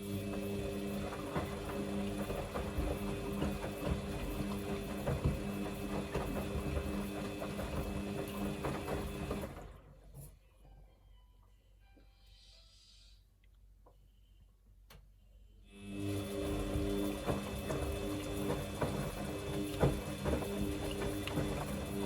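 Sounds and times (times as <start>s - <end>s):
washing machine motor hum: 0.0s - 10.1s, 15.7s - 22.0s
drum clicking and sloshing: 0.2s - 9.8s, 16.2s - 22.0s.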